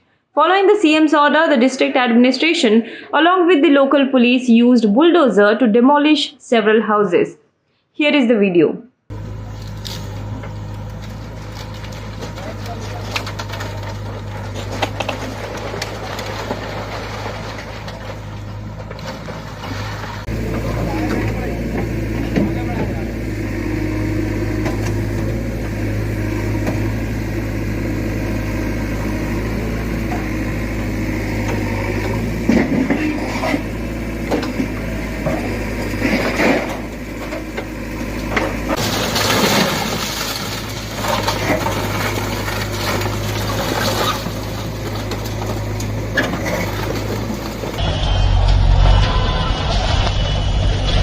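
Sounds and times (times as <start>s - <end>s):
bulldozer engine running: 9.1s - 51.0s
house crashing and crunching: 9.8s - 23.1s, 32.1s - 47.8s.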